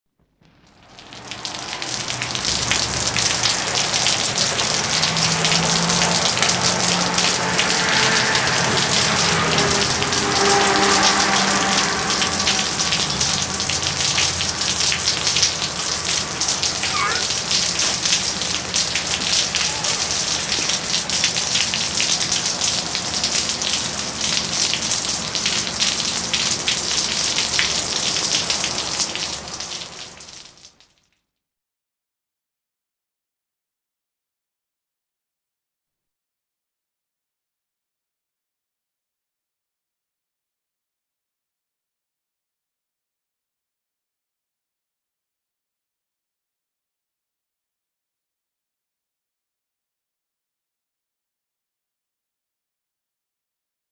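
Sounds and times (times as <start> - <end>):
rain falling on a street: 0.4 - 31.1.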